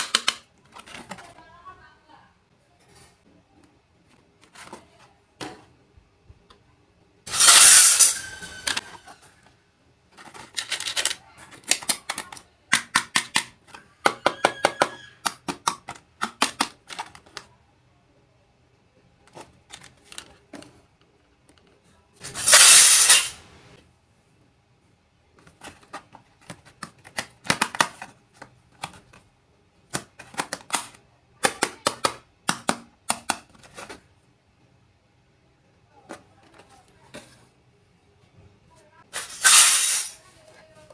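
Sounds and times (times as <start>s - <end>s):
toy pieces clicking and clinking: 10.2s - 17.4s.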